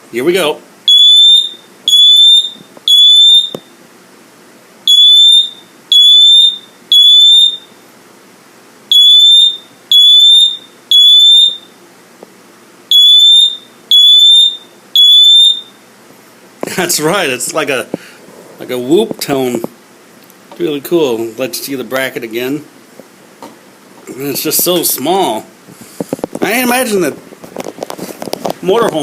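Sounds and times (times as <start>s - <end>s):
smoke detector alarm beeps: 0.9s - 3.8s, 4.9s - 7.8s, 8.9s - 11.8s, 12.9s - 15.8s.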